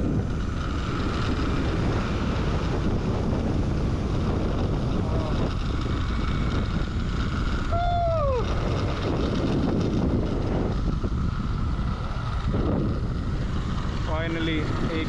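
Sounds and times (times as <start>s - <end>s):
steady high whine: 0.0s - 15.0s
wind buffeting microphone: 0.0s - 15.0s.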